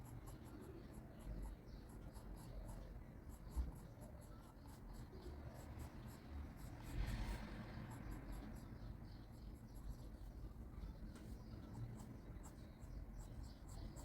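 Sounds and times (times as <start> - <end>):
pencil scratching on paper: 11.2 - 14.0.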